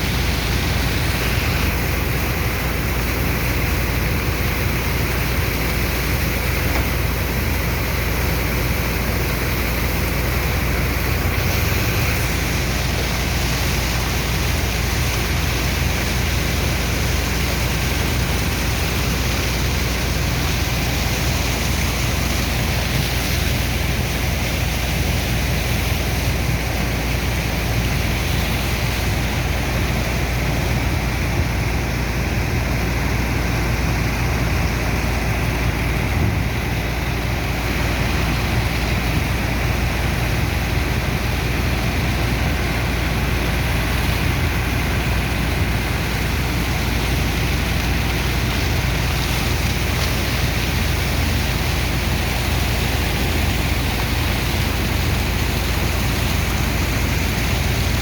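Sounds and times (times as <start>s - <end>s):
pump engine droning: 0.0s - 58.0s
slurry of sand and water pouring: 0.0s - 58.0s.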